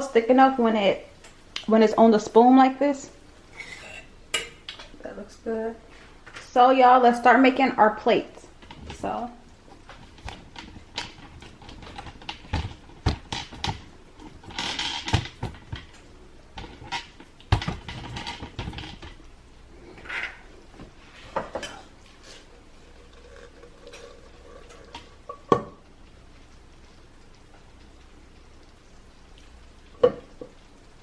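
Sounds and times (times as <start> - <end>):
dishes and utensils clinking: 20.0 - 20.5, 21.3 - 21.9.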